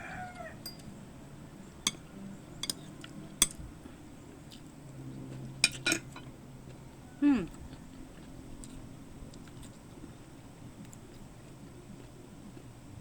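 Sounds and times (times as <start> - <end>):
utensils clinking against dishes: 0.6 - 0.9, 1.8 - 3.6, 5.6 - 6.3.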